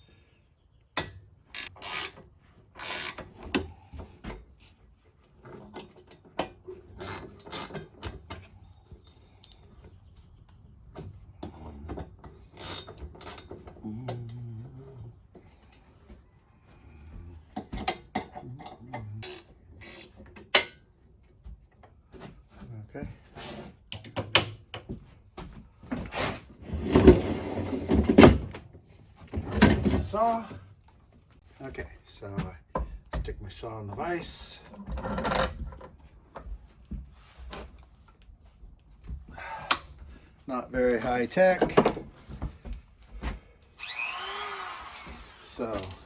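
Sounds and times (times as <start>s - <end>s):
metal tools clicking and clanking: 1.0s - 2.2s, 5.4s - 9.8s, 11.4s - 13.8s, 17.6s - 21.1s, 39.6s - 40.1s.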